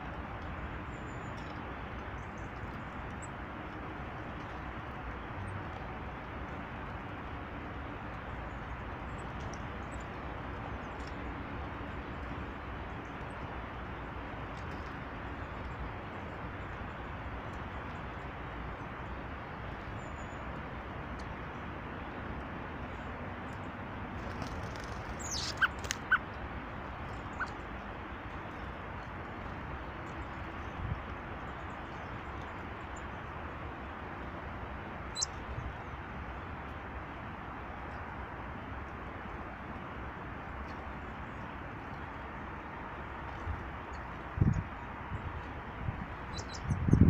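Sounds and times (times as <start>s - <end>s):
rushing outdoor background noise: 0.0s - 47.0s
small bird chirp: 24.3s - 26.2s, 27.1s - 27.6s, 35.1s - 35.4s, 46.3s - 47.0s
high bird chirps: 25.1s - 26.2s, 46.3s - 47.0s.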